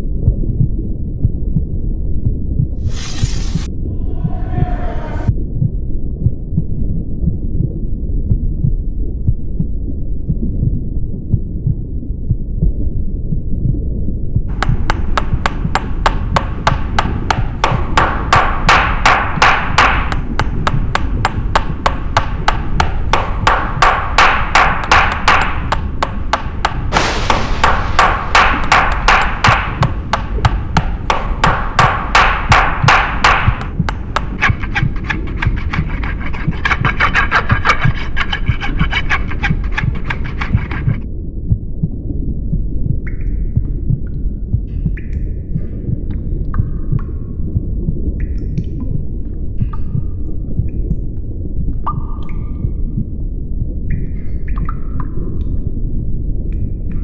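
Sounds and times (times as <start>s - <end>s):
low throbbing rumble: 0.0s - 18.0s, 26.8s - 35.0s, 39.5s - 56.6s
fast sharp knocks: 14.5s - 41.0s.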